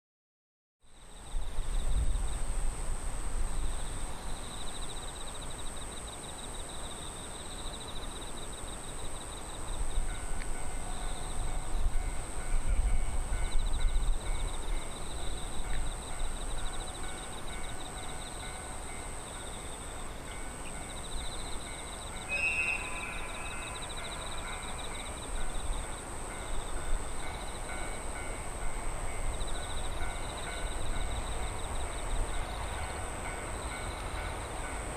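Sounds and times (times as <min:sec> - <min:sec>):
wind rumbling on microphone: 0:01.2 - 0:04.6
faint steady tones: 0:03.5 - 0:34.9.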